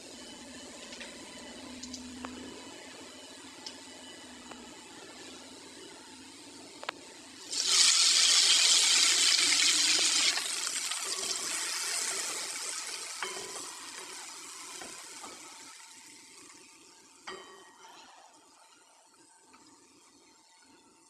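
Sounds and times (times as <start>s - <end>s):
food sizzling in hot oil: 7.4s - 16.8s.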